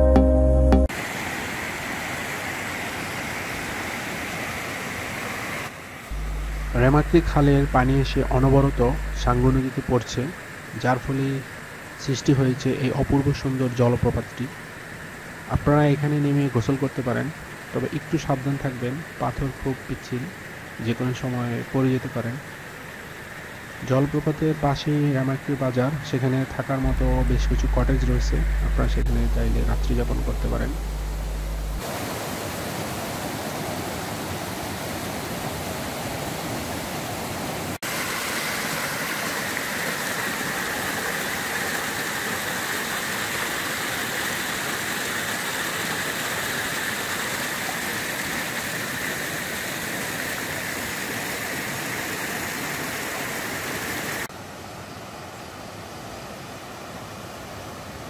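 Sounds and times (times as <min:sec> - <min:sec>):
water rushing over waterfall: 0:00.9 - 0:12.0, 0:31.8 - 0:54.3.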